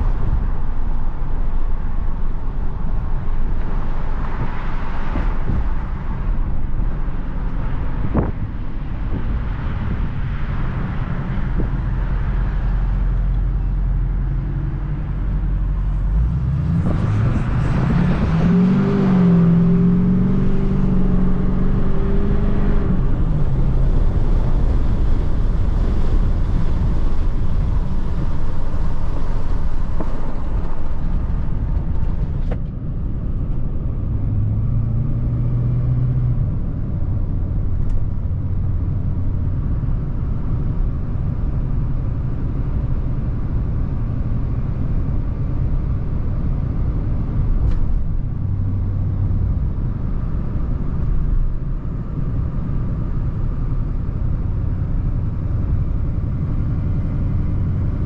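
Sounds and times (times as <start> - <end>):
pickup truck engine: 0.0 - 58.0
road rumble: 0.0 - 58.0.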